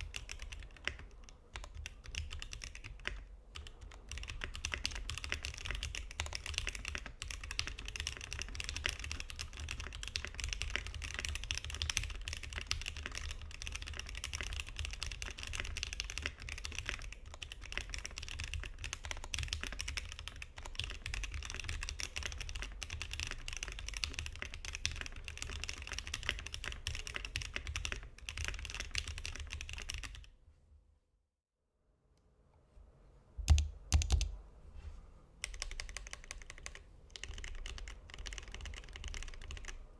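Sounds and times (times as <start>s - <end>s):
fast mechanical keyboard typing: 0.0s - 30.3s, 33.4s - 34.3s, 35.4s - 39.9s.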